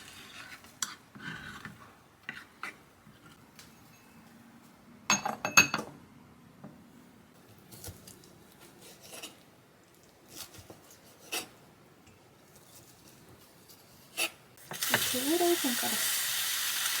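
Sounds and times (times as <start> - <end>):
kitchenware clattering: 5.1 - 6.0.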